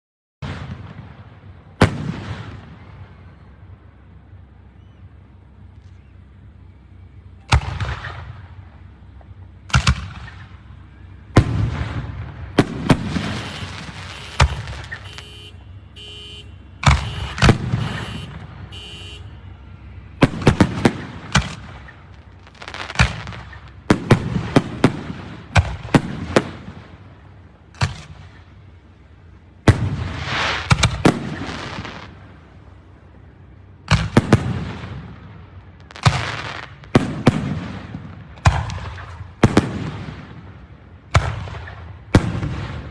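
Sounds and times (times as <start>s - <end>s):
fireworks bangs: 0.4s - 3.7s, 7.4s - 19.4s, 20.0s - 28.7s, 29.6s - 32.6s, 33.8s - 42.9s
fireworks hissing and crackling: 11.4s - 15.6s, 16.8s - 19.2s, 20.2s - 27.2s, 29.7s - 32.5s, 33.8s - 42.9s.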